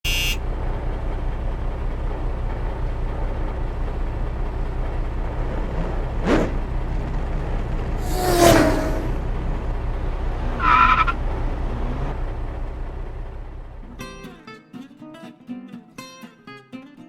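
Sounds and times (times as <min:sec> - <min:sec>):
tank engine rumbling: 0:00.0 - 0:14.4
short rising sweep: 0:08.0 - 0:09.3.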